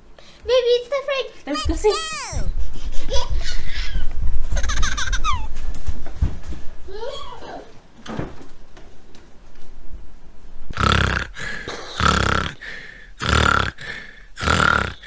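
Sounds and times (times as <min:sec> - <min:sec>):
exaggerated snoring: 0:10.8 - 0:15.0.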